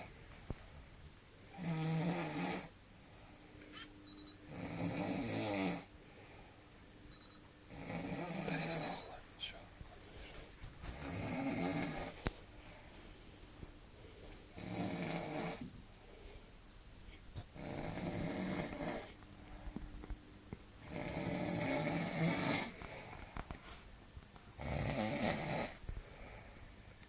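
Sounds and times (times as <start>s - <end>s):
man snoring heavily: 1.5s - 2.7s, 4.5s - 5.9s, 7.7s - 8.9s, 11.0s - 12.2s, 14.6s - 15.7s, 17.6s - 19.1s, 20.8s - 22.8s, 24.6s - 25.8s
quiet breathing: 2.6s - 3.8s, 5.8s - 7.3s, 7.9s - 20.1s, 22.2s - 24.0s, 25.6s - 27.0s.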